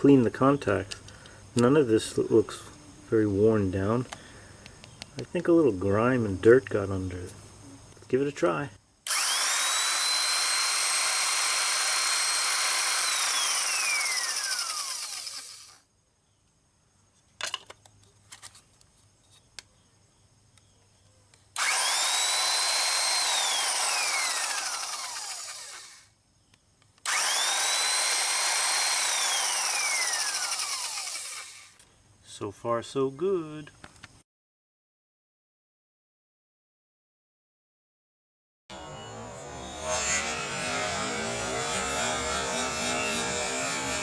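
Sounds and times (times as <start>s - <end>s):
electric drill motor whining: 9.1s - 15.8s, 21.6s - 26.1s, 27.0s - 31.8s, 38.7s - 44.0s.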